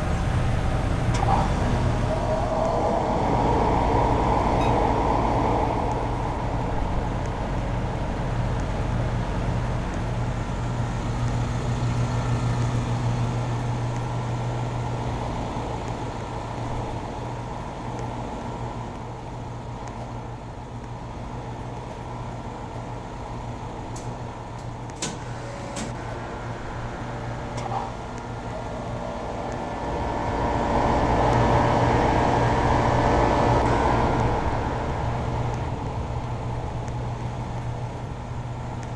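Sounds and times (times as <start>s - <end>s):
sharp ticks: 0.0s - 16.0s
air conditioner humming: 0.0s - 17.6s.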